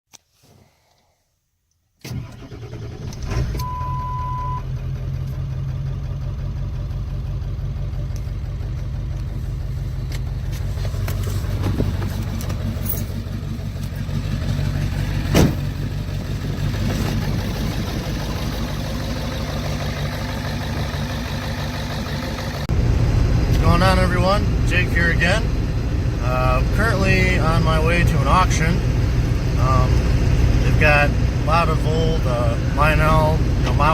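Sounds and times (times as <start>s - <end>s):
steady beep: 3.6s - 4.6s
car engine running: 3.6s - 33.9s.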